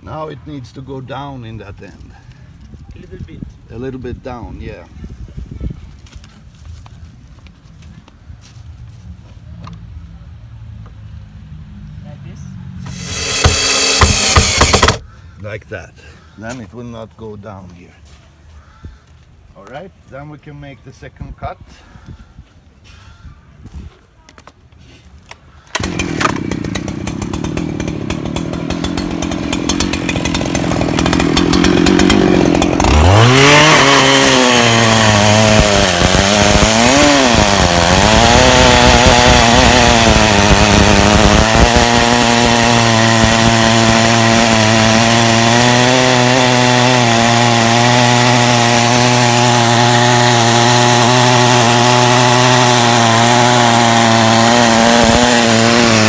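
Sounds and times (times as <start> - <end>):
petrol engine starting and revving: 12.8 - 15.0, 25.8 - 44.8.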